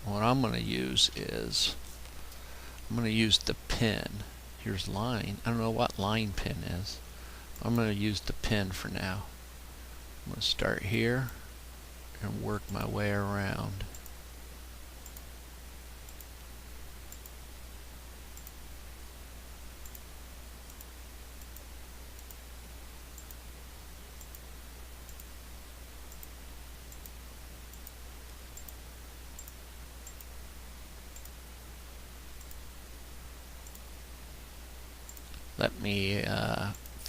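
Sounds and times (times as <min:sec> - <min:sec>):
steady low hum: 0:00.0 - 0:37.0
faint mouse clicks: 0:13.8 - 0:14.2, 0:15.0 - 0:15.3, 0:16.1 - 0:16.3, 0:17.1 - 0:17.4, 0:18.3 - 0:18.6, 0:19.8 - 0:20.1, 0:20.7 - 0:22.4, 0:23.1 - 0:23.4, 0:24.2 - 0:24.4, 0:25.0 - 0:25.3, 0:26.1 - 0:30.3, 0:31.1 - 0:31.4, 0:32.4 - 0:32.7, 0:33.6 - 0:33.9, 0:35.1 - 0:35.5.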